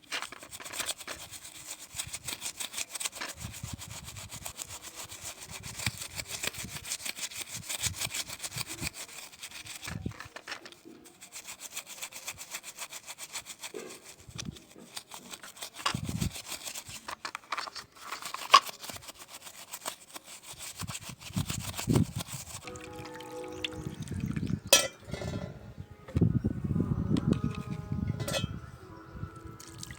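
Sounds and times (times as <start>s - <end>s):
fast scraping on hard surface: 0.0s - 22.7s, 24.8s - 25.6s.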